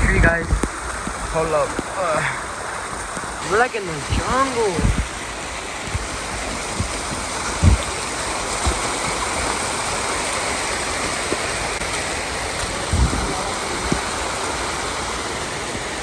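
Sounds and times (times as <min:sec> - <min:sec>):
river cascade rushing: 0:00.0 - 0:16.0
thumps on microphone: 0:04.8 - 0:05.1, 0:06.7 - 0:08.0.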